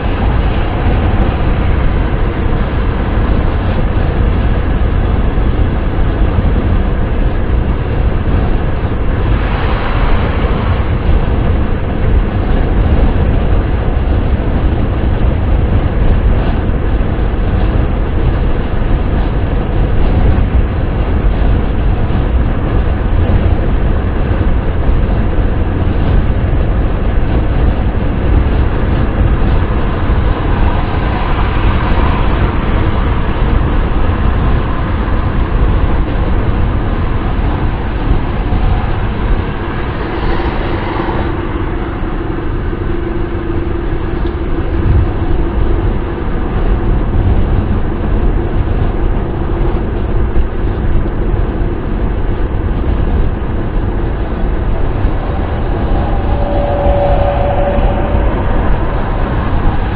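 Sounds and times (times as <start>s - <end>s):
car road and wind noise: 0.0s - 59.9s.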